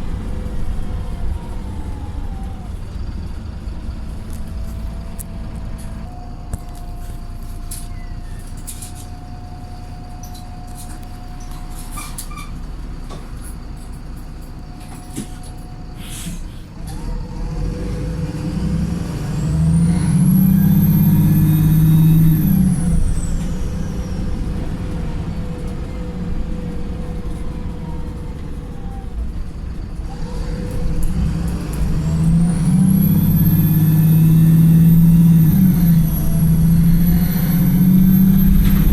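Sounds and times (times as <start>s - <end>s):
bus diesel engine running: 0.0s - 38.9s
high engine whine: 0.0s - 38.9s.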